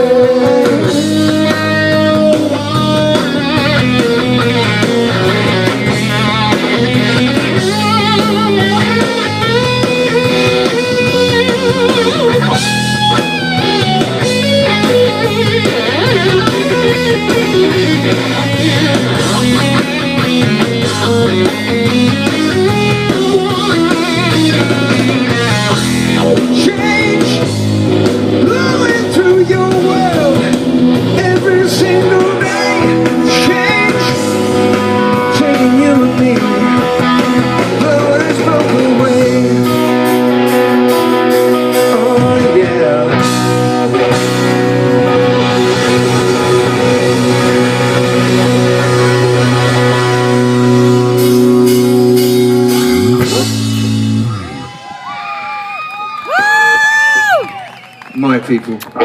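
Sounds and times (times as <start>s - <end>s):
person singing: 0.0s - 5.4s, 26.2s - 27.5s, 28.4s - 40.7s, 41.4s - 43.4s
electric guitar: 0.0s - 59.0s
live rock band: 0.0s - 59.0s.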